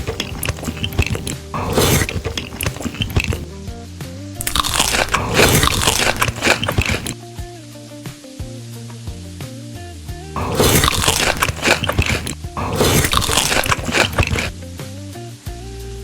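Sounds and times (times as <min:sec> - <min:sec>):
crunchy food being chewed: 0:00.0 - 0:03.4, 0:04.4 - 0:07.2, 0:10.4 - 0:14.6.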